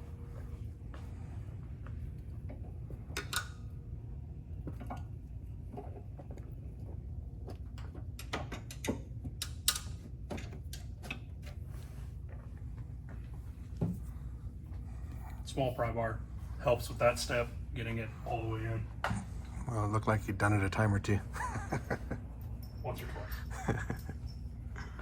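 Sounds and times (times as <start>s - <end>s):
steady low hum: 0.0s - 25.0s
metal clicks and knocks of tools: 7.8s - 11.2s.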